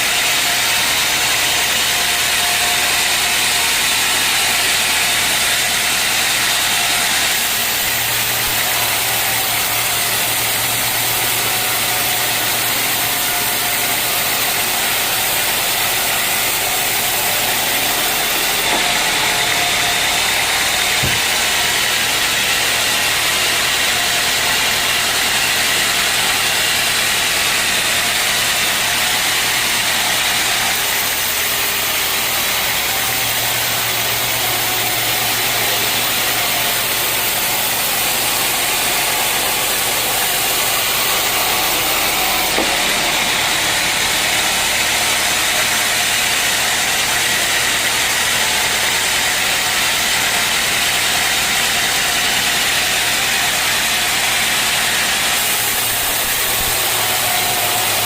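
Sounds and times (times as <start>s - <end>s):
sawmill machinery hissing: 0.0s - 58.0s
sharp knock: 20.8s - 21.6s.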